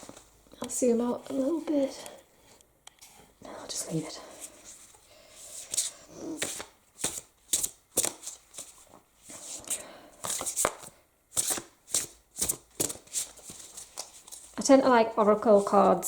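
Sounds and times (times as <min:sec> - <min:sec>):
cards shuffled by hand: 0:05.5 - 0:14.6.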